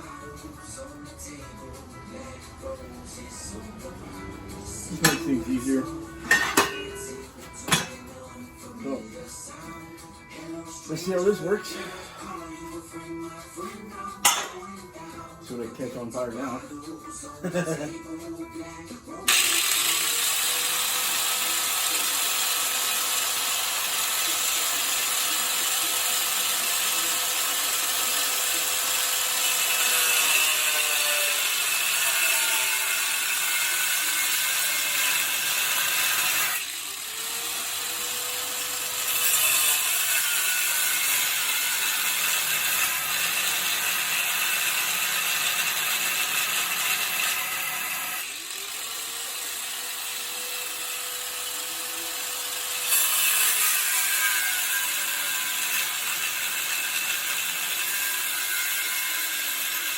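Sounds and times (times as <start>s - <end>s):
abrasive wheel grinding steel: 2.1s - 16.6s.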